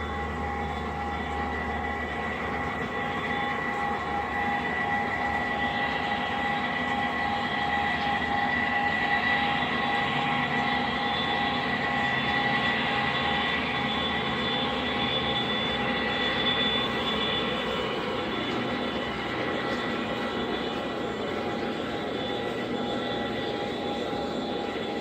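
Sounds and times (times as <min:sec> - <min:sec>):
wheels rumbling on rails: 0:00.0 - 0:08.7
model train motor whine: 0:00.0 - 0:25.0.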